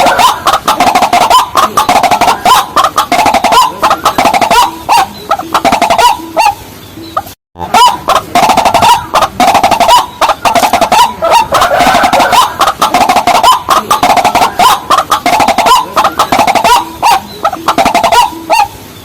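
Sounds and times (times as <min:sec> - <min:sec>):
rails croaking calls: 0:00.0 - 0:19.0.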